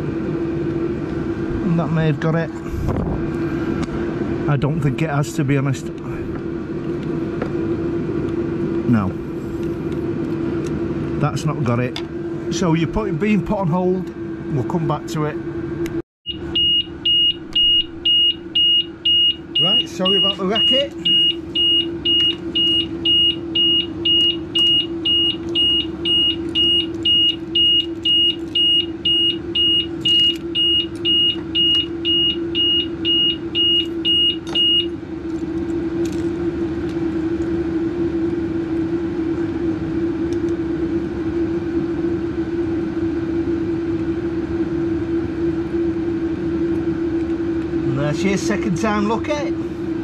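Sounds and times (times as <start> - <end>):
steady low hum: 0.0 - 50.0
electronic beeper beeping: 16.3 - 34.9.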